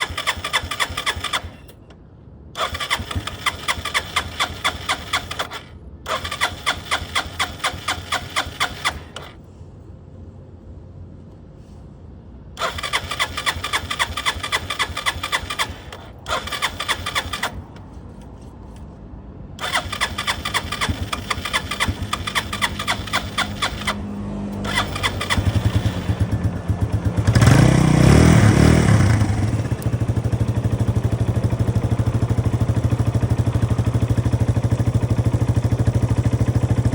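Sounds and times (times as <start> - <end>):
motorcycle starter cranking: 0.0 - 1.9, 2.6 - 9.4, 12.6 - 17.8, 19.6 - 36.9
motorcycle engine running: 19.6 - 36.9.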